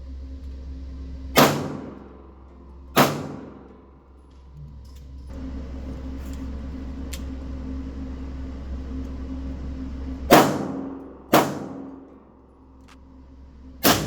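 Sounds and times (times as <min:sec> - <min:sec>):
steady low hum: 0:00.0 - 0:14.0
rifle shots: 0:01.4 - 0:02.1, 0:03.0 - 0:03.7, 0:10.3 - 0:12.0.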